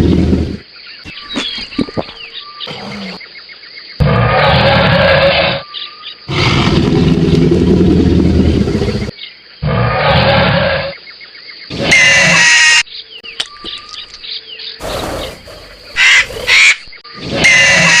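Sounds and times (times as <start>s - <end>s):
birds chirping: 0.0s - 18.0s
jungle ambience: 0.0s - 18.0s
shrill screeching creature calls: 11.8s - 12.8s, 16.0s - 18.0s.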